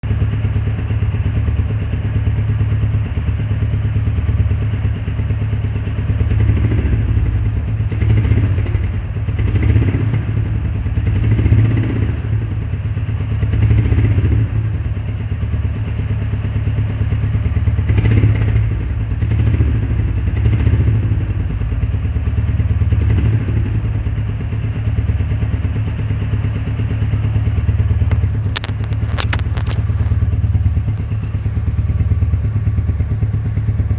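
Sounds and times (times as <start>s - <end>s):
motorcycle engine idling: 0.1s - 33.9s
sharp clicks: 28.1s - 31.3s.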